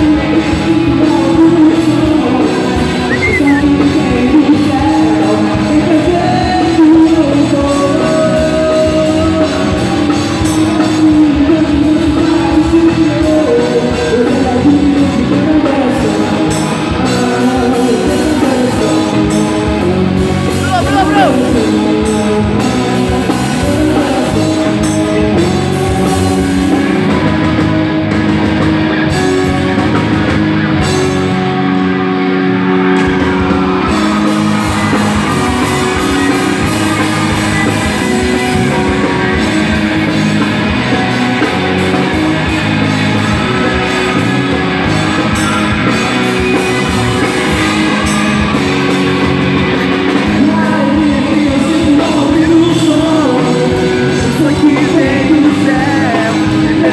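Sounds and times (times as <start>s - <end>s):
person singing: 0.0s - 27.7s, 33.2s - 56.9s
live rock band playing: 0.0s - 56.9s.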